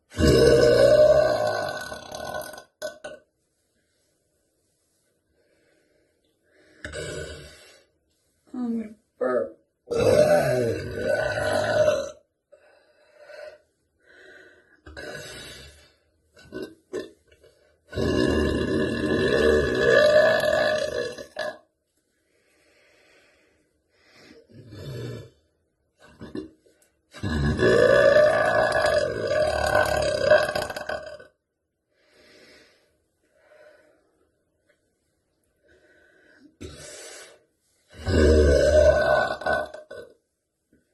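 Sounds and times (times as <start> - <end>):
quiet breaths: 3.4 - 8.6, 12.5 - 16.2, 22.0 - 24.6, 31.9 - 37.9
woman burping: 38.1 - 40.1.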